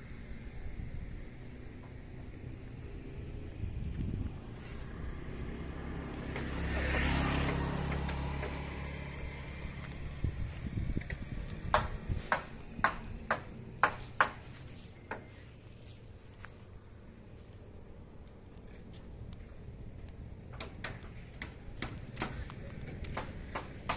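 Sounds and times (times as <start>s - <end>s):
passing vehicle engine: 0.0s - 23.9s
sharp knocks: 11.7s - 14.5s.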